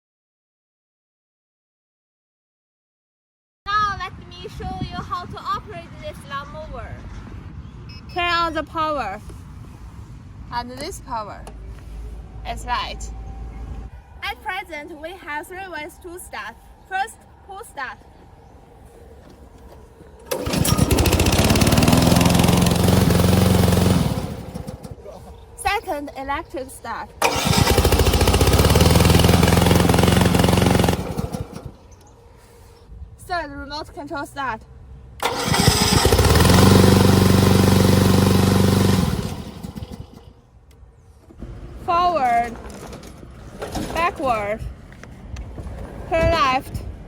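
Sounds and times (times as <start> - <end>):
petrol engine starting and running: 19.8 - 25.1, 27.2 - 32.0, 35.2 - 40.5.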